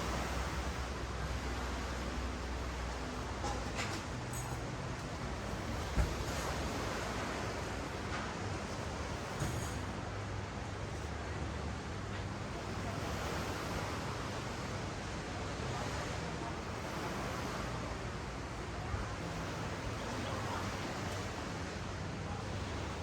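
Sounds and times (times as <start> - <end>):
ocean waves on sandy beach: 0.0 - 3.0, 12.4 - 23.0.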